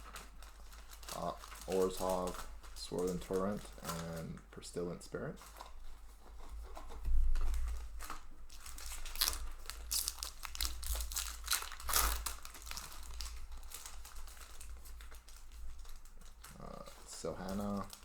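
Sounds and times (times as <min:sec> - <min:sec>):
foil wrapper crinkling and tearing: 0:00.0 - 0:18.0.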